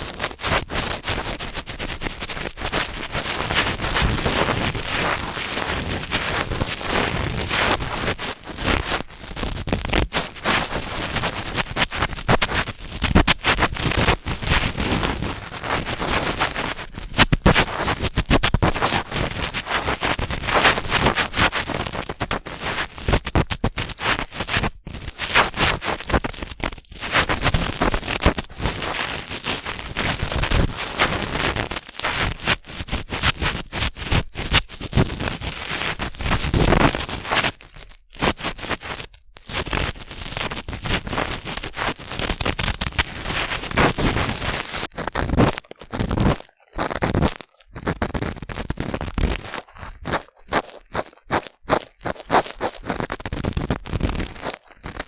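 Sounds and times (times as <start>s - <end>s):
cotton swab scratching microphone: 0.0s - 55.0s.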